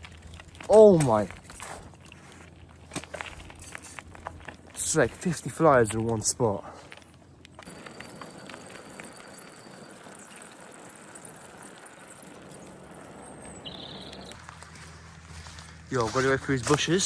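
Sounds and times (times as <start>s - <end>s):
bicycle tyres crunching on path: 0.0s - 17.0s
low engine hum: 10.8s - 17.0s.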